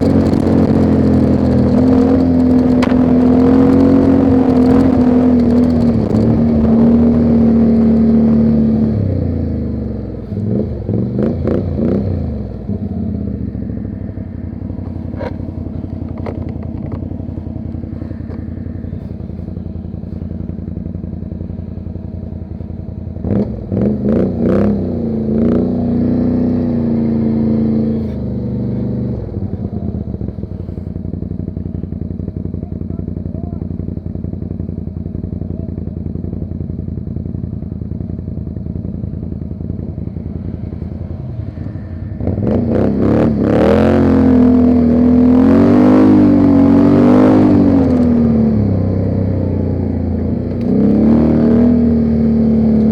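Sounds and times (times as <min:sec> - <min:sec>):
knocks and rattles: 0:00.0 - 0:06.9
atv engine running: 0:00.0 - 0:52.9.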